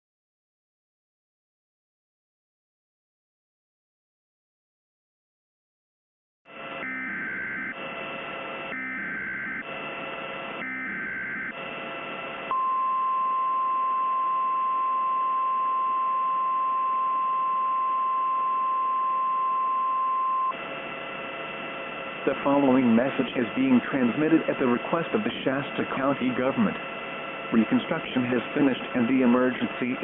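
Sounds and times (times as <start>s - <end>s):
radio static: 6.5s - 12.8s, 20.1s - 30.0s
short buzzing data bursts: 6.5s - 12.9s
steady warning tone: 6.5s - 30.0s.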